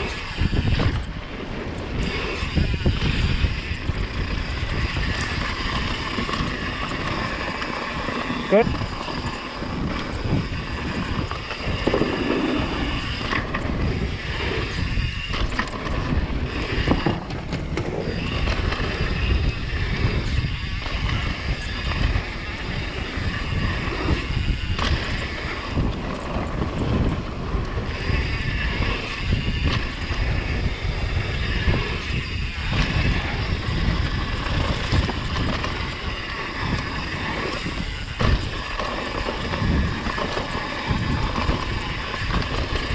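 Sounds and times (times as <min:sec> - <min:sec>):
bike rattling over dirt: 0:00.0 - 0:42.9
wind buffeting microphone: 0:00.0 - 0:42.9.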